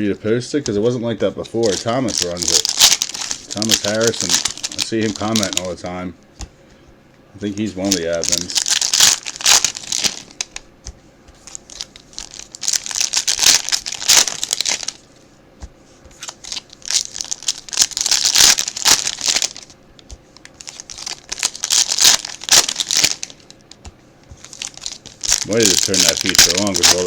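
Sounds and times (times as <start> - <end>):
foil wrappers tearing and crinkling: 1.6 - 5.8, 7.6 - 10.6, 11.4 - 15.1, 16.2 - 19.8, 20.4 - 23.7, 24.4 - 27.0.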